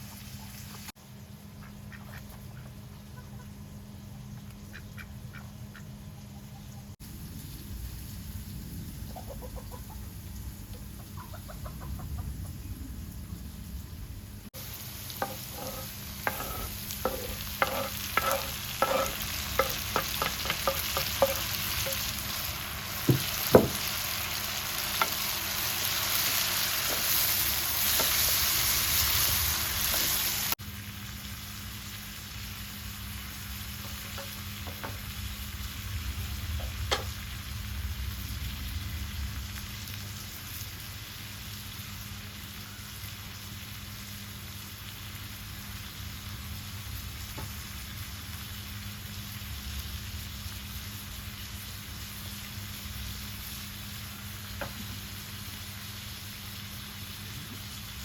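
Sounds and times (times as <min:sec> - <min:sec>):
chicken clucks: 0:01.6 - 0:07.0, 0:09.1 - 0:10.1, 0:10.7 - 0:12.6
food sizzling in a pot: 0:14.5 - 0:58.0.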